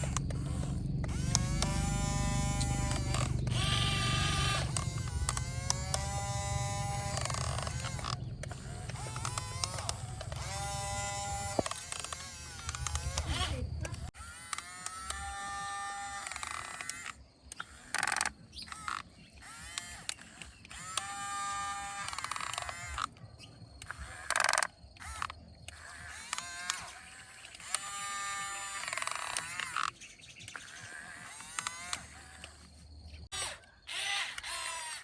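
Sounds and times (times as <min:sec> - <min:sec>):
rough noisy bursts: 0:00.0 - 0:14.1
small electric motors whining: 0:00.0 - 0:35.0.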